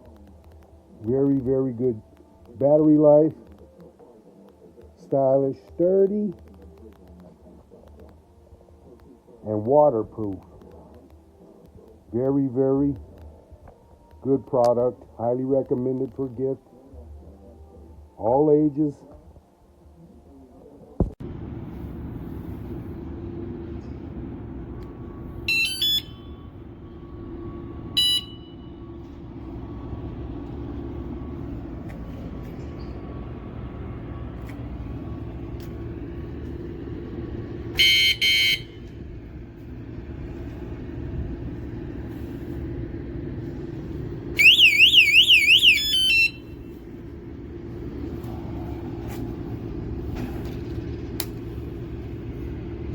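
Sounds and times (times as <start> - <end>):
steady low hum: 0.0 - 52.9
bike alarm high chirps: 25.5 - 26.4, 28.0 - 28.8, 37.8 - 38.8, 44.4 - 46.6
loud warbling siren: 44.4 - 46.8.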